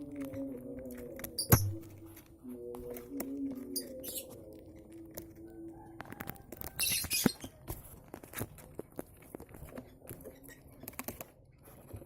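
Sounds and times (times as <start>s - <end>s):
rustling and scratching clicks: 5.1s - 12.0s.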